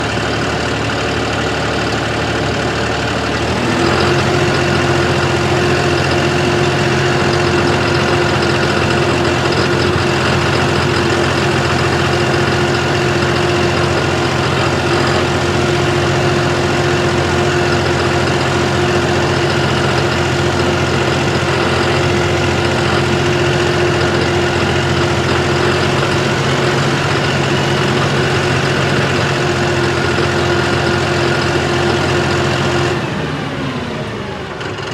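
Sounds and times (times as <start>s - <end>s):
engine knock: 0.0s - 34.9s
tractor diesel engine running: 0.0s - 34.9s.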